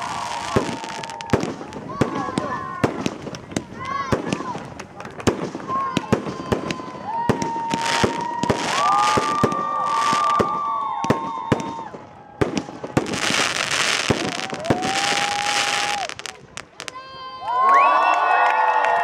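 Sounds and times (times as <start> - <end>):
fireworks hissing: 0.0 - 10.5, 12.6 - 17.0
fireworks whistling: 0.0 - 17.0
fireworks popping and crackling: 0.0 - 17.1.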